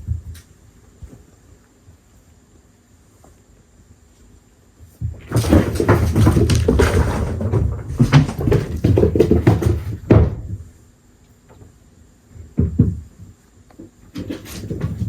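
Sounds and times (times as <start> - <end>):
knocking and rattling: 5.0 - 10.7, 12.5 - 15.0.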